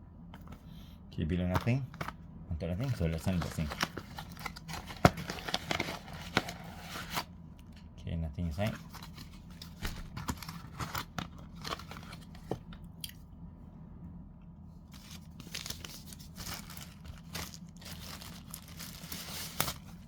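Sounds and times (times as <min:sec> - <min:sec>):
packaging rustling: 0:02.8 - 0:07.3, 0:08.6 - 0:12.8, 0:14.9 - 0:20.0.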